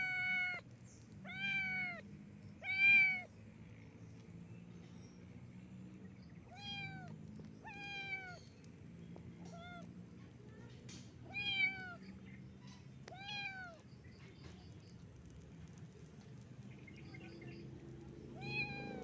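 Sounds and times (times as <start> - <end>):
kitten meowing: 0.0 - 0.6, 1.2 - 2.0, 2.6 - 3.3, 6.5 - 8.4, 9.5 - 9.9, 11.3 - 12.0, 13.1 - 13.8, 18.4 - 19.0.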